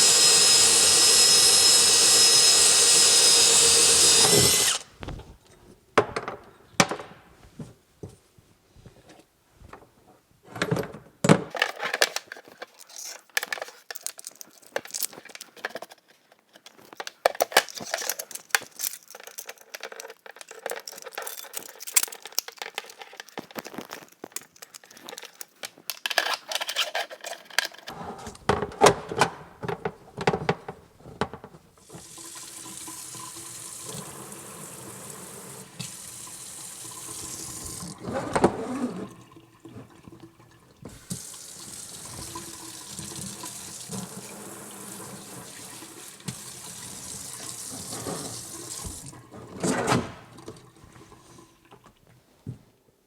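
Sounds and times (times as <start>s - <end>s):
water running from faucet: 0.0s - 4.8s, 31.8s - 49.6s, 50.3s - 52.0s
hard parts clattering at sink: 10.5s - 33.3s.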